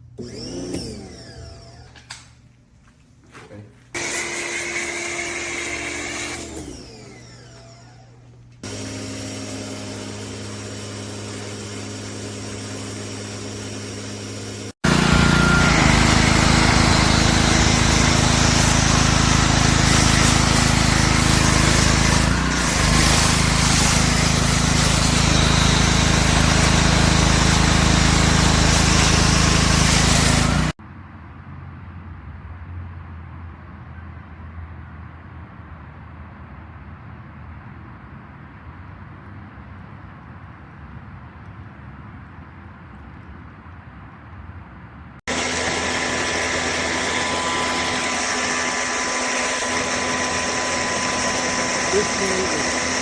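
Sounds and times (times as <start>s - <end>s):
pressure washer motor humming: 0.2s - 2.2s, 4.0s - 30.8s, 45.3s - 53.0s
high-pressure water spray hiss: 17.3s - 30.8s.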